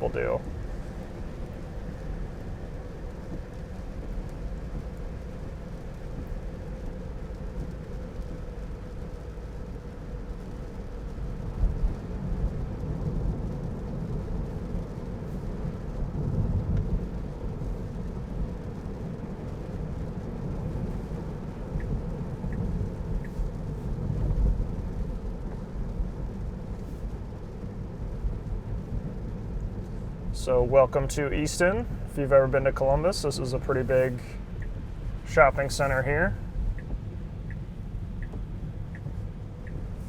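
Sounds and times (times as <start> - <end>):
road and tyre rumble: 0.0 - 40.0
light ticks: 3.2 - 30.1, 34.1 - 40.0
faint steady hum: 20.1 - 40.0.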